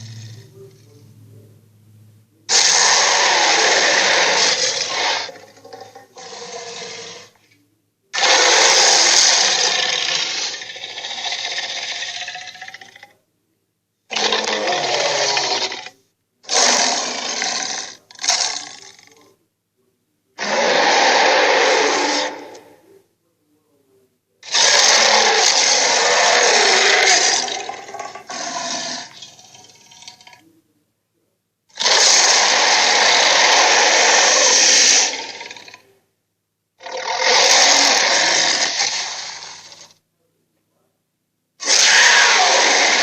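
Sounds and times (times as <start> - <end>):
harsh raspy monster screech: 0.0 - 0.5, 2.5 - 7.4, 8.2 - 13.1, 14.1 - 19.2, 20.4 - 22.8, 24.4 - 30.4, 31.8 - 35.8, 36.8 - 40.0, 41.6 - 43.0.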